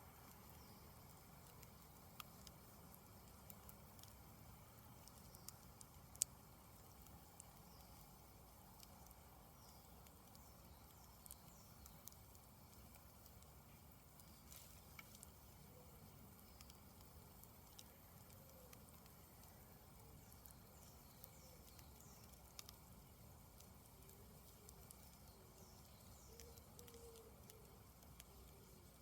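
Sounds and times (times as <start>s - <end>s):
campfire crackling: 0.0s - 29.0s.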